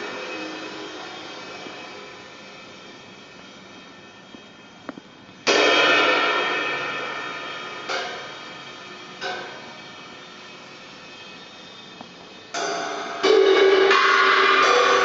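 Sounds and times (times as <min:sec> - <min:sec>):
loud metallic crash ringing: 0:00.0 - 0:02.6, 0:05.5 - 0:10.2, 0:12.6 - 0:15.0
light metal ringing strikes: 0:05.4 - 0:09.9, 0:12.6 - 0:15.0.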